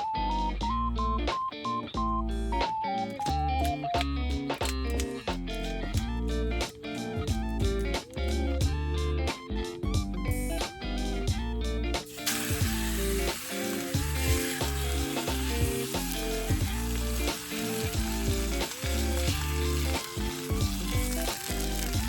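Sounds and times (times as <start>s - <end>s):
background music: 0.0s - 22.0s
food sizzling in a pan: 12.1s - 22.0s.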